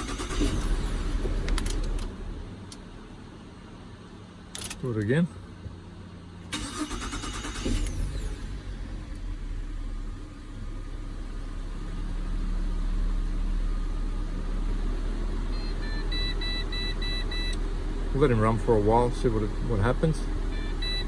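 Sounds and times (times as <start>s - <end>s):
car engine starting and running: 0.0s - 21.0s
short electronic beeps: 20.5s - 21.0s.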